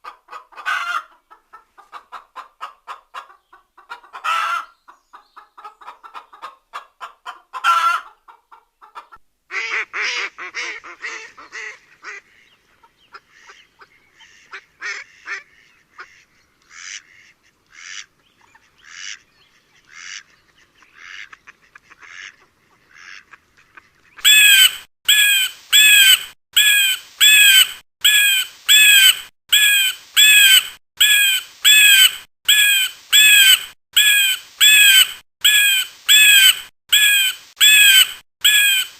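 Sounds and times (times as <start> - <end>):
hens clucking: 0.0 - 9.2.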